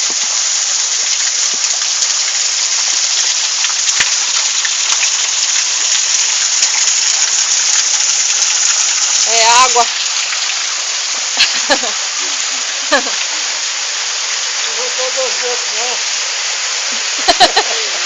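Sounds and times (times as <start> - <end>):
waterfall rushing: 0.0 - 18.0
small water splashes: 0.9 - 18.0.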